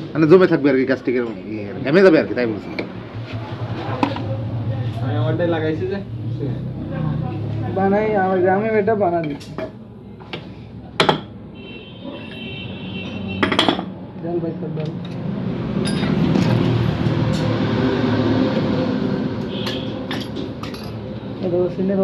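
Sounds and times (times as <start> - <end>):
metal tools clinking: 15.8 - 16.7, 20.1 - 21.1.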